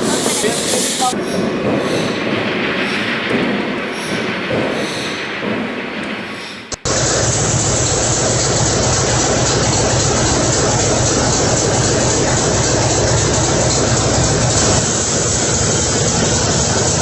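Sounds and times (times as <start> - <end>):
large engine running loudly: 7.1 - 17.0.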